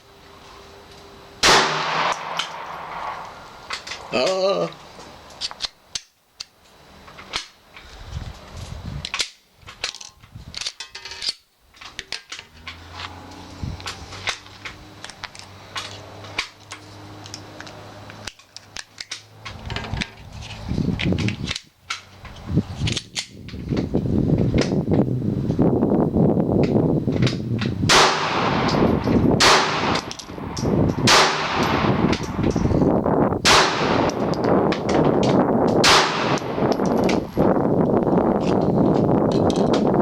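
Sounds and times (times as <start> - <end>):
pistol shots: 1.4 - 3.3, 27.9 - 30.2, 31.0 - 32.2, 33.4 - 34.4, 35.8 - 36.6
loud rushing noise: 1.4 - 5.2.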